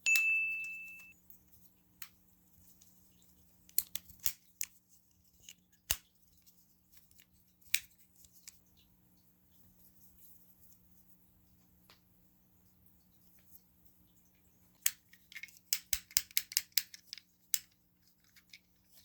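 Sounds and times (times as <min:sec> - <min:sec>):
plastic fidget toys clicking: 0:14.9 - 0:18.6.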